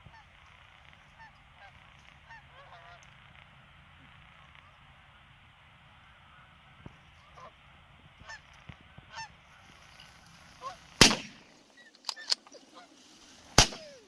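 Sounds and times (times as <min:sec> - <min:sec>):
geese honking: 0:01.1 - 0:03.2, 0:04.4 - 0:07.6, 0:08.2 - 0:11.0, 0:11.7 - 0:13.0.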